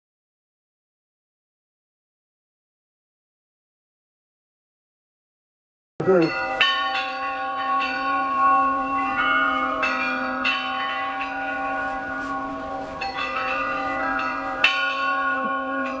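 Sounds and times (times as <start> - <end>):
bell ringing: 6.0 - 16.0.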